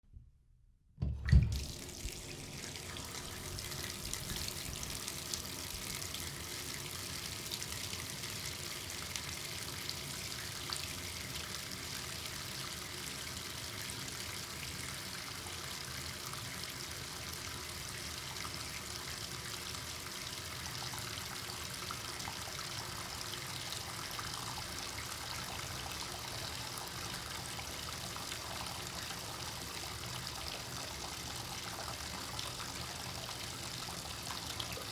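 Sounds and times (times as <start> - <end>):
low thump of faucet: 1.0 - 5.0
water running from tap: 1.3 - 34.9.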